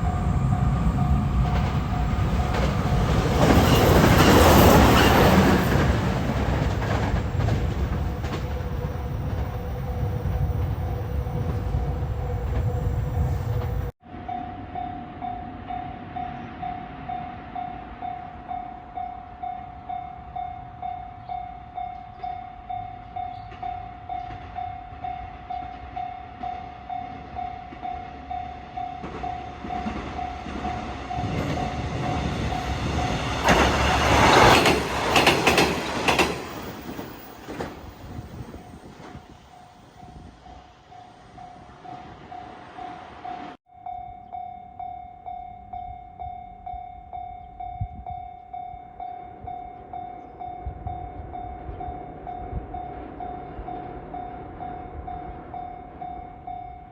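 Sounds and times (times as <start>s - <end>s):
train wheels clattering: 1.0s - 13.9s, 28.8s - 39.6s
level crossing warning bell: 16.8s - 37.3s, 38.3s - 56.9s.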